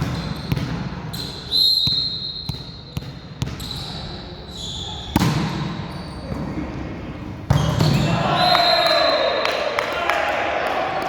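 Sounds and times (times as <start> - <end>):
echoing gym noise: 0.0 - 11.0
referee's whistle long blast: 8.3 - 9.4.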